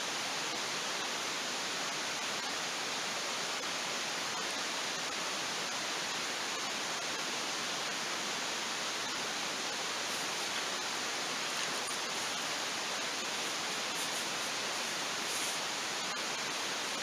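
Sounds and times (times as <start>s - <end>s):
campfire crackles: 9.1s - 17.0s
rushing hiss: 9.1s - 17.0s.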